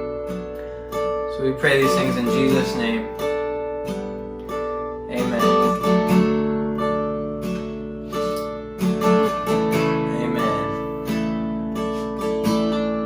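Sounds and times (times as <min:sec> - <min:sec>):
acoustic guitar strumming chords: 0:00.0 - 0:13.0.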